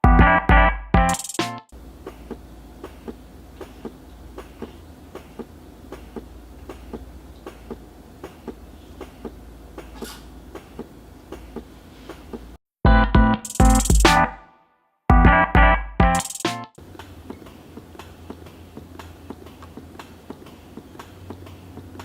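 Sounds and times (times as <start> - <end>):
breast pump motor hum: 16.8 - 22.0.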